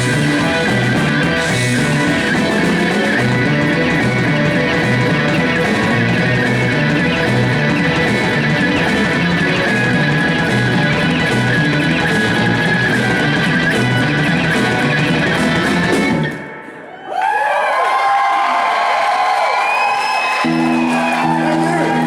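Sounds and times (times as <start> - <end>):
live bluesy rock band: 0.0 - 16.8
audience whooping and cheering: 16.6 - 22.0.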